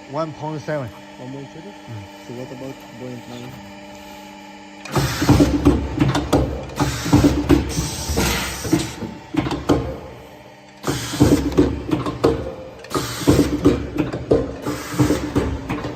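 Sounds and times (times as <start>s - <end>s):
machine clacking and knocking: 4.9s - 10.0s, 10.8s - 15.9s.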